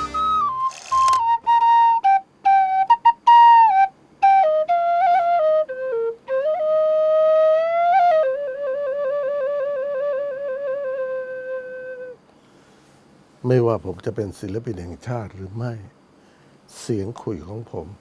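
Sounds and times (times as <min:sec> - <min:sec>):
bamboo flute melody: 0:00.0 - 0:12.2.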